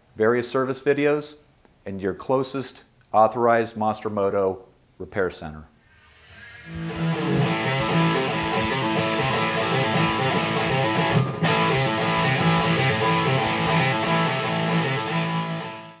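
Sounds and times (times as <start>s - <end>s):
guitar music with steady beat: 6.7s - 16.0s.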